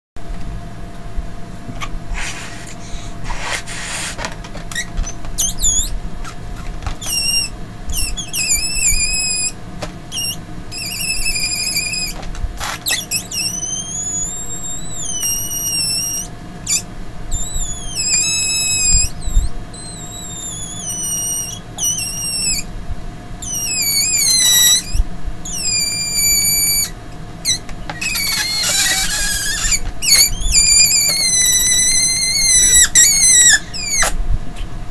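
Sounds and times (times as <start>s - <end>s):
short hissing bursts: 2.1s - 4.2s
high-pitched squealing calls: 2.2s - 22.7s, 23.4s - 34.2s.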